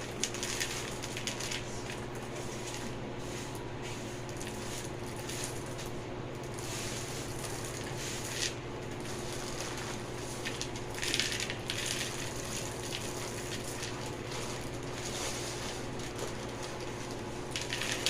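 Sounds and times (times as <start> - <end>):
dry beans rattling: 0.0 - 3.0, 4.1 - 18.0
beans rustling: 0.0 - 18.0
steady low hum: 0.0 - 18.0.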